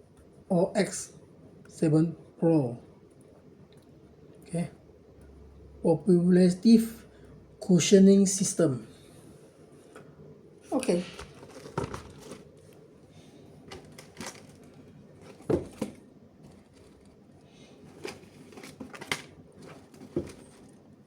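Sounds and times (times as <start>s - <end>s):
shoes and packaging handled: 10.8s - 21.0s.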